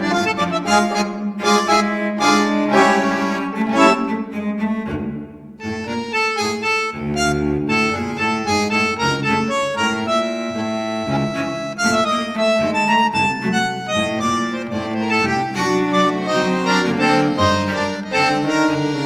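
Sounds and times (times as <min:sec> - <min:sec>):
instrumental tango music: 0:00.0 - 0:19.0.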